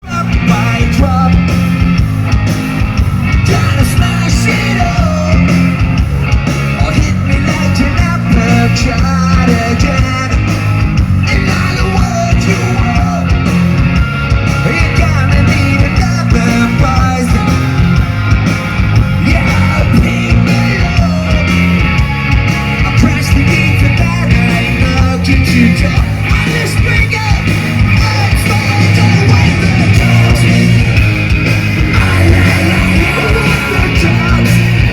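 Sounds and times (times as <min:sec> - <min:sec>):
punk rock band playing live: 0:00.0 - 0:34.9
shouted and sung vocal: 0:03.4 - 0:05.7, 0:19.2 - 0:21.5, 0:22.9 - 0:31.0, 0:31.8 - 0:34.9.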